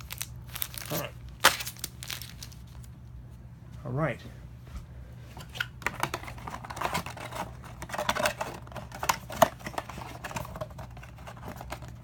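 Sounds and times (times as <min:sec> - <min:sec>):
packaging rustling and crinkling: 0:00.0 - 0:02.9.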